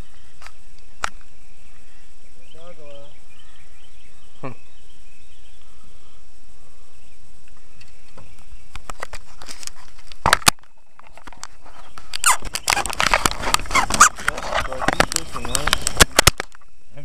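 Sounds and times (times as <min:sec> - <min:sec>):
outdoor background noise: 0:00.0 - 0:17.0.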